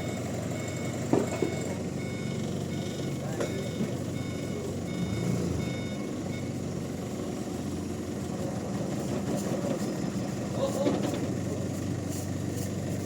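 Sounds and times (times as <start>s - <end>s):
reversing alarm beeping: 0.0s - 6.8s
low engine rumble: 0.0s - 13.0s.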